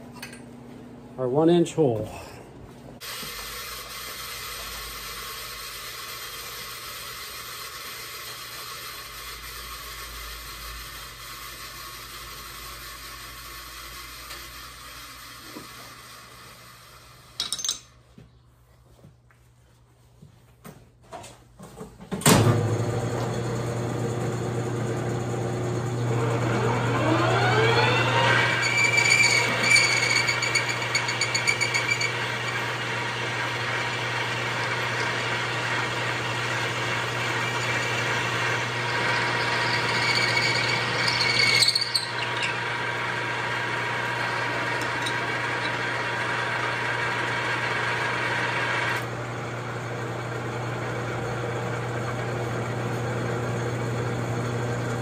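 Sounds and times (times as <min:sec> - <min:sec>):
metal lathe humming: 0:23.2 - 0:49.1
high whine of drill cutting metal: 0:26.1 - 0:49.0.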